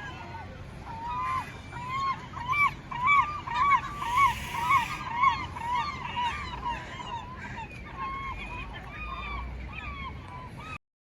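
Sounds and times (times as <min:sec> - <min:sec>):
large bird calling rapidly: 0:02.4 - 0:06.5.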